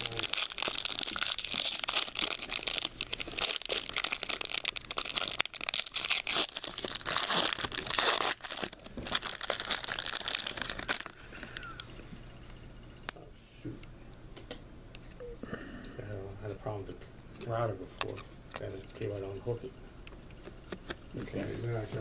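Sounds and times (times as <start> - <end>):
plastic and foil wrapping crinkling: 0.0 - 11.9.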